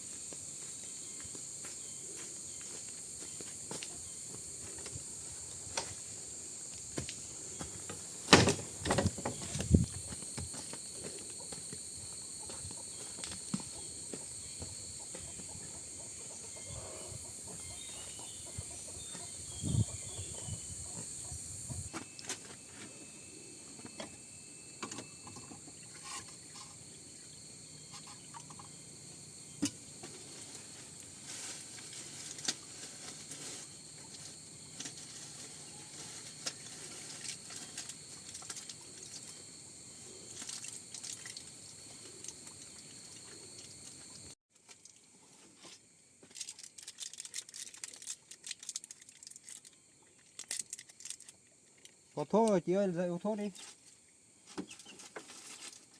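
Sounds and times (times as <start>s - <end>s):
insects trilling: 0.0s - 55.9s
knocks and rustles: 7.0s - 10.9s.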